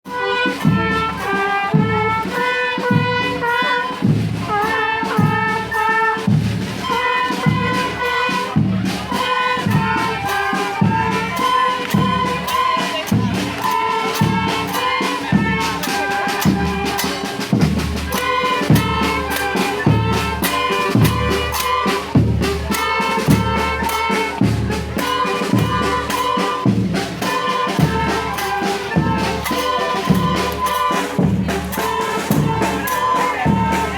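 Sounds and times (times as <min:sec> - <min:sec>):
steady drum beat: 0:00.1 - 0:33.9
held melody notes: 0:09.1 - 0:33.9.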